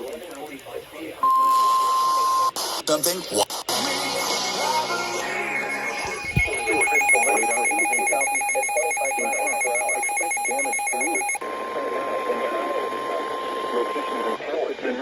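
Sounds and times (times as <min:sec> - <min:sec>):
steady single-pitch alert tone: 0:05.2 - 0:11.4
warbling alarm tone: 0:05.2 - 0:11.4.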